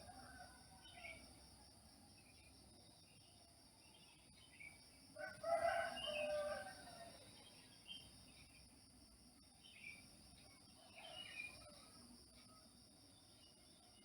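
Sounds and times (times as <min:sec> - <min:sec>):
high chirring of insects: 0:00.0 - 0:14.0
rooster crowing: 0:05.2 - 0:07.1.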